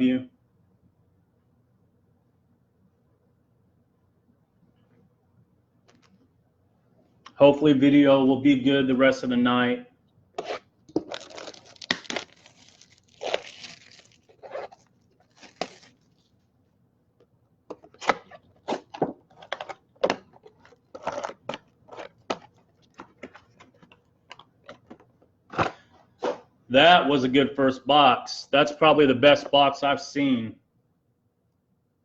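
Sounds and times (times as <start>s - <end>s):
plastic packaging crinkling and tearing: 10.9s - 16.3s.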